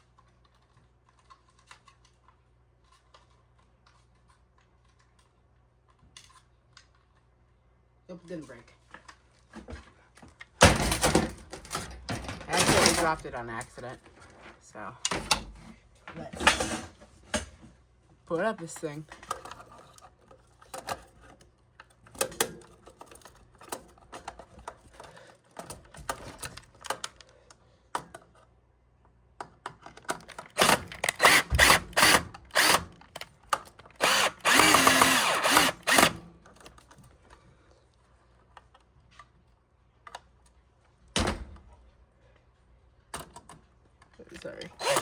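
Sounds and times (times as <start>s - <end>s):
clicks and knocks of handling parts: 0.1s - 7.3s, 19.1s - 37.4s
power drill running: 30.6s - 33.0s, 33.9s - 36.2s, 44.7s - 45.0s.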